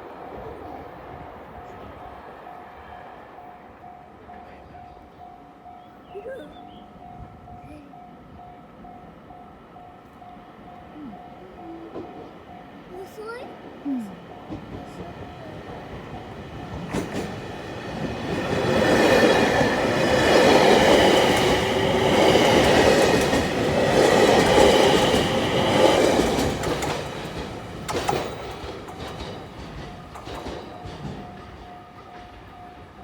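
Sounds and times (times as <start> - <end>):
train rushing past: 0.0 - 5.3, 11.4 - 33.0
crossing warning bell ringing: 2.4 - 33.0
wheels clacking over rail joints: 14.4 - 33.0.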